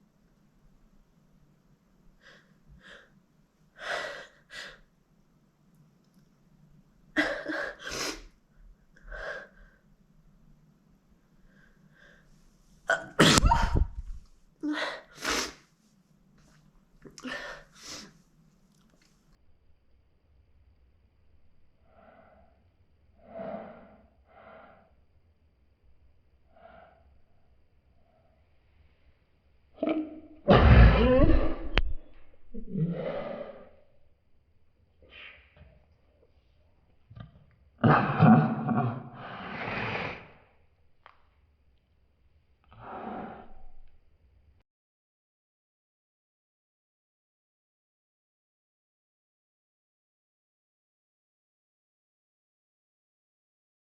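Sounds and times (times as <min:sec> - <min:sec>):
woman gasping breaths: 0:09.0 - 0:09.8
woman sneezing: 0:12.9 - 0:14.0.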